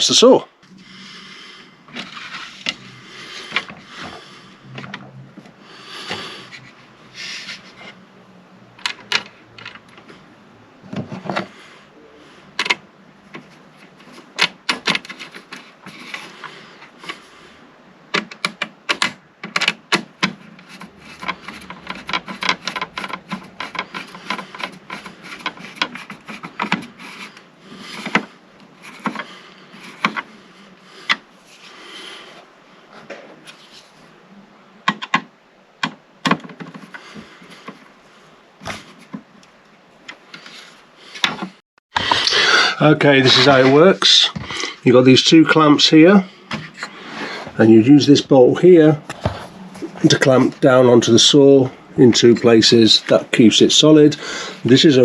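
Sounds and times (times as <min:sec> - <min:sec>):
rubbing and scraping: 0:00.7 - 0:08.1, 0:10.9 - 0:17.5, 0:18.2 - 0:34.2, 0:36.4 - 0:39.3, 0:40.2 - 0:55.0
sharp clicks and knocks of parts: 0:08.8 - 0:10.1, 0:12.6 - 0:16.2, 0:18.1 - 0:27.3, 0:27.9 - 0:30.3, 0:31.0 - 0:31.3, 0:34.8 - 0:37.0.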